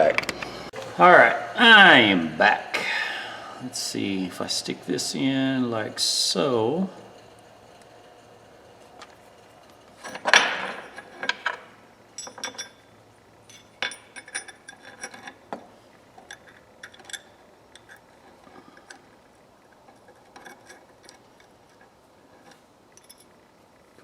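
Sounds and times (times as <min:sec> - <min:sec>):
small metal parts clinking: 0:09.9 - 0:23.5.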